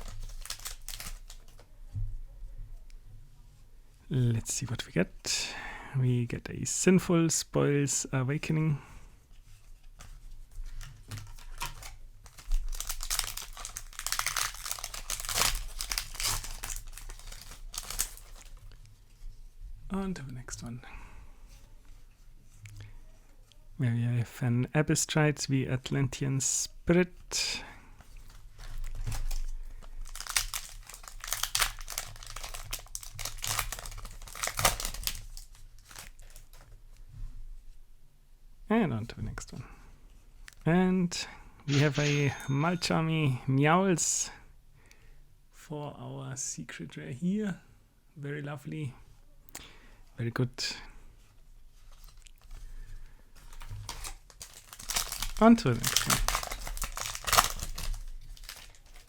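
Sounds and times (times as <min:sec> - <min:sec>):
wrapper crinkling and tearing: 0:00.0 - 0:01.6, 0:10.7 - 0:18.7, 0:28.2 - 0:36.7, 0:51.8 - 0:52.6, 0:53.4 - 0:59.0.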